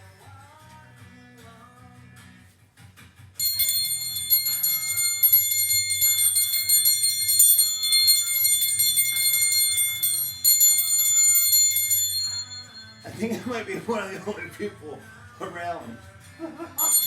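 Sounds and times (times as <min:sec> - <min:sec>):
bell ringing rapidly: 0:03.4 - 0:13.6, 0:16.8 - 0:17.0.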